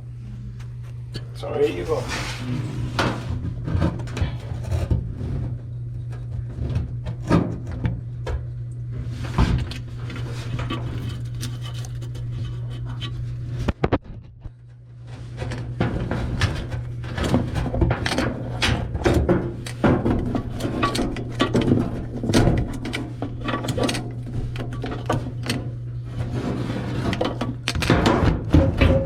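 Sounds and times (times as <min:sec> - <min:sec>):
steady low hum: 0:00.0 - 0:29.0
knocks and scrapes of hands working: 0:09.0 - 0:29.0.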